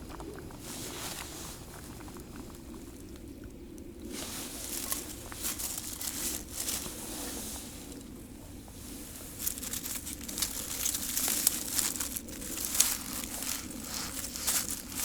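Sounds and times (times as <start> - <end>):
steady low hum: 0.0 - 15.0
material rustling and crinkling: 4.1 - 7.8, 8.8 - 15.0.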